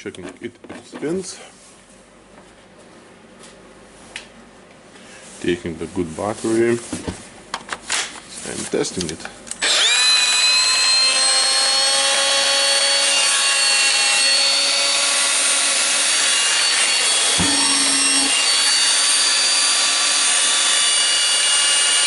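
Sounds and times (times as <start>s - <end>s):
angle grinder high whine: 9.6s - 22.0s.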